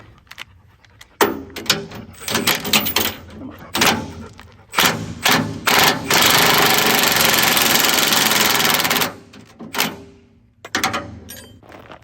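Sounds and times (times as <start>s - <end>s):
impact wrench rattling buzz: 1.2s - 3.2s, 4.7s - 11.1s.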